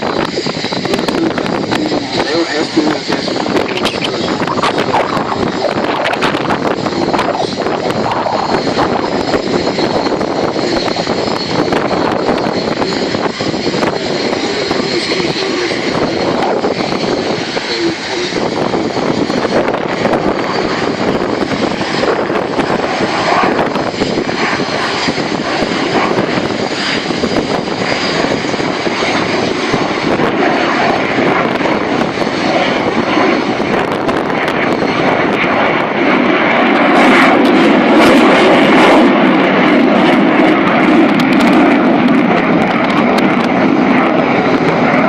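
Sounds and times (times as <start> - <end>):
airplane engine flying overhead: 0.0 - 45.0.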